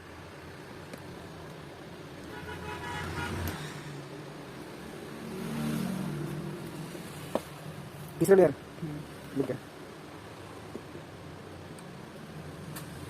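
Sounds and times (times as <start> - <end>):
road traffic passing: 0.0 - 13.0.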